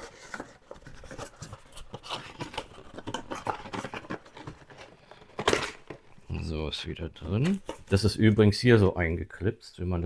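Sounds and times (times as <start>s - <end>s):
packaging scraping and rubbing: 0.0s - 6.0s.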